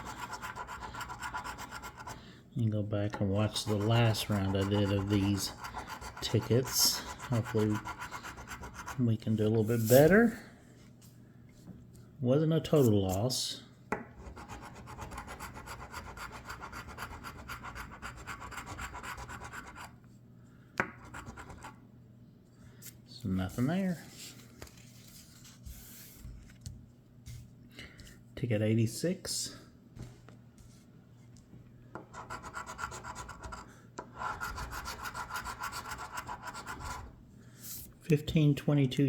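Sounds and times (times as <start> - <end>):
lottery ticket being scratched: 3.4 - 9.1.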